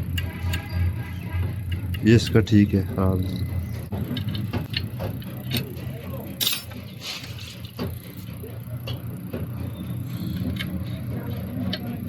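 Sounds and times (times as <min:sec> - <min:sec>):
small metal parts clicking: 0:00.0 - 0:02.6, 0:03.3 - 0:05.8, 0:06.4 - 0:06.9, 0:10.0 - 0:12.0
steady low hum: 0:00.0 - 0:12.0.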